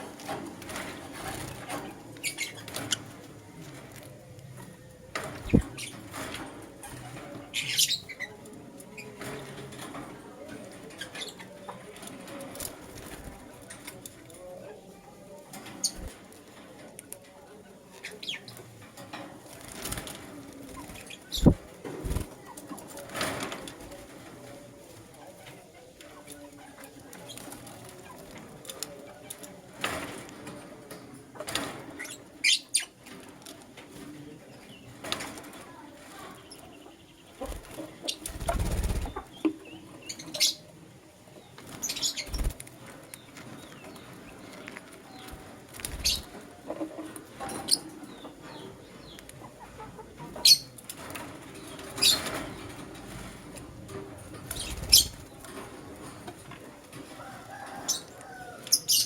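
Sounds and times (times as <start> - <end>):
lovebirds chirping: 5.4 - 6.0, 20.8 - 22.2, 45.1 - 46.3.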